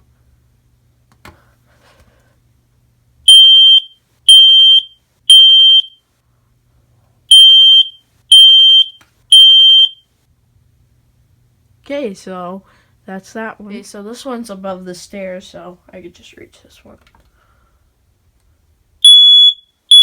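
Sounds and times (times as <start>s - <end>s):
smoke alarm beeping: 3.3s - 6.0s, 7.3s - 10.0s, 19.0s - 20.0s.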